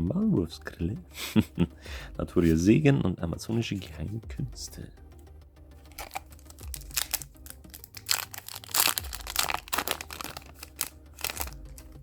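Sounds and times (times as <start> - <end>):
foil wrapper crinkling and tearing: 5.9 - 12.0.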